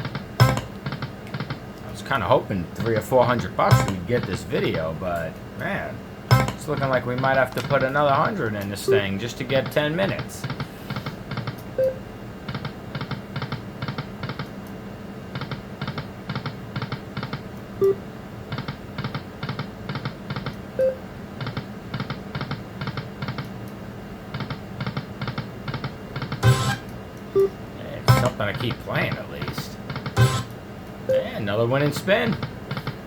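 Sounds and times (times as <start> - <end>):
slot machine reel-stop ticks: 0.4 - 0.7, 3.7 - 4.0, 6.3 - 6.8, 26.4 - 26.9, 28.1 - 28.4, 30.2 - 30.5
short beeps: 27.4 - 28.4.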